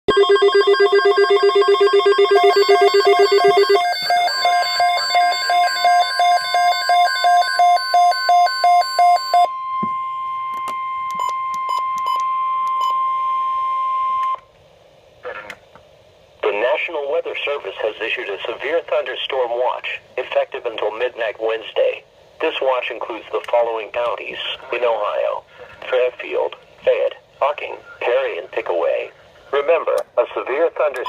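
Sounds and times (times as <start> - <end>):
electronic alarm beeping: 0.1 - 14.4
steady warning alarm tone: 0.1 - 14.4.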